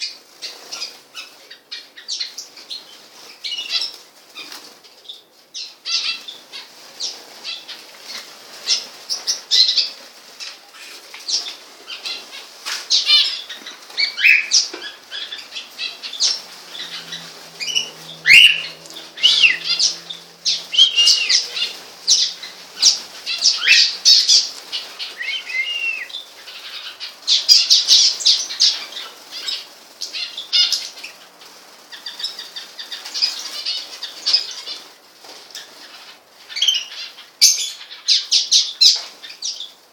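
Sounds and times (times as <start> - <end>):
pet birds chirping: 0.0 - 35.0, 35.6 - 39.9
wing flutters: 5.9 - 37.1.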